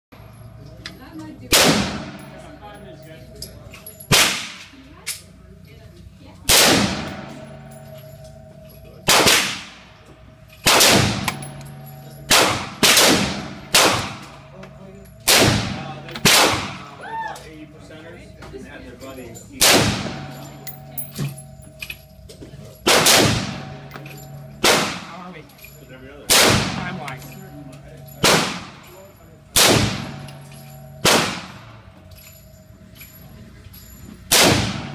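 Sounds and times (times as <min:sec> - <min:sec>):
rifle shots echoing: 0:01.5 - 0:02.4, 0:04.1 - 0:04.7, 0:06.5 - 0:07.8, 0:09.0 - 0:09.9, 0:10.6 - 0:14.4, 0:15.2 - 0:17.0, 0:19.6 - 0:20.6, 0:22.8 - 0:25.2, 0:26.3 - 0:27.0, 0:28.2 - 0:28.8, 0:29.6 - 0:31.8, 0:34.3 - 0:34.9.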